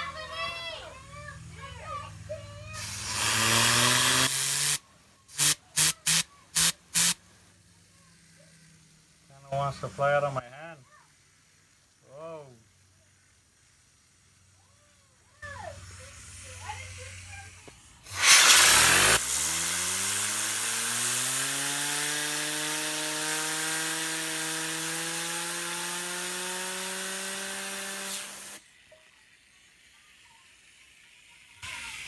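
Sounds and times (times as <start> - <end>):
fidget spinner whirring: 0.0 - 7.2, 10.9 - 32.0
loud hissing rush: 2.7 - 7.2, 15.6 - 28.6.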